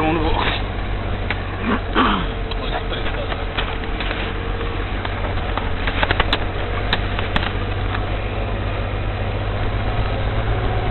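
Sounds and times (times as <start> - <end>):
vehicle engine running at low revs: 0.0 - 10.9
sharp clicks and knocks: 5.0 - 8.1.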